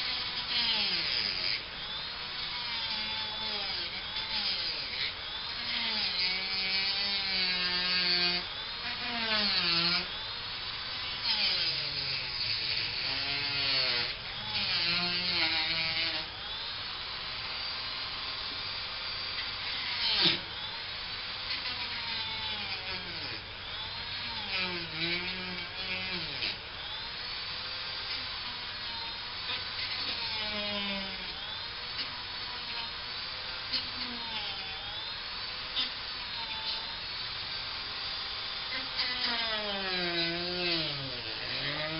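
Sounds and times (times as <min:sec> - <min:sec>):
high-speed power tool running: 0:00.0 - 0:41.9.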